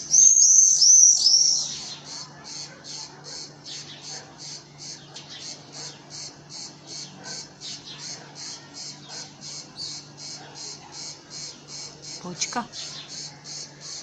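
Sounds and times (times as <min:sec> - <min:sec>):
bird chirps: 0:00.0 - 0:10.0
insects chirping: 0:00.0 - 0:14.0.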